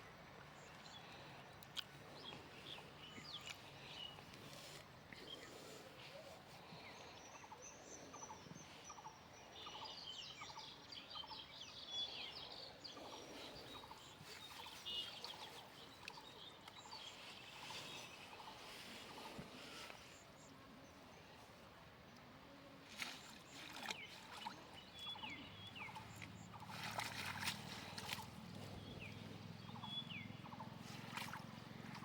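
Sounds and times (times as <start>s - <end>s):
faint high bird chirps: 13.0s - 18.6s.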